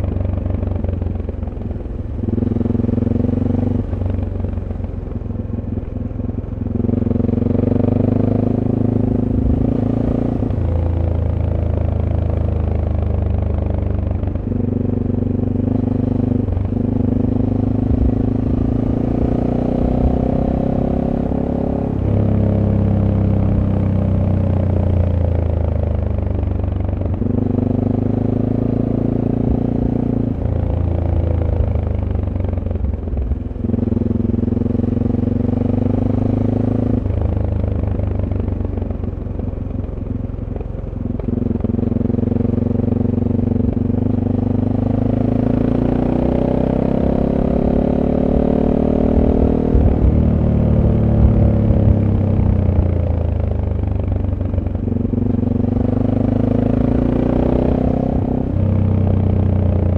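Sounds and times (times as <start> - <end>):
motorcycle engine while riding: 0.0 - 59.9.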